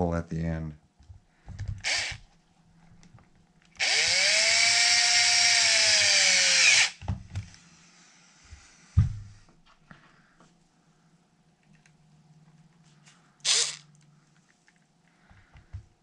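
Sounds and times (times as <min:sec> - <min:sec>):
cordless drill whining: 0:01.8 - 0:02.2, 0:03.8 - 0:07.0, 0:13.4 - 0:13.8.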